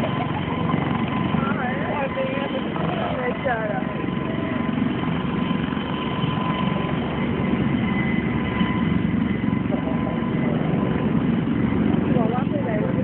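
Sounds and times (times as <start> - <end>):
engine drone with high whine: 0.0 - 13.0.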